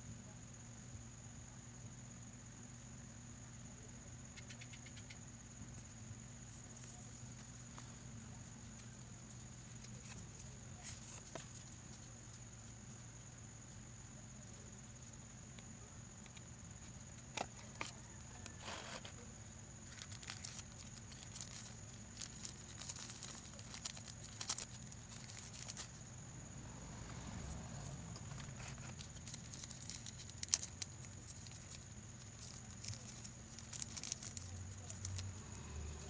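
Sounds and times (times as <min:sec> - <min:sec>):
steady low hum: 0:00.0 - 0:36.0
packaging clicks and rustles: 0:19.9 - 0:25.9, 0:28.1 - 0:35.4.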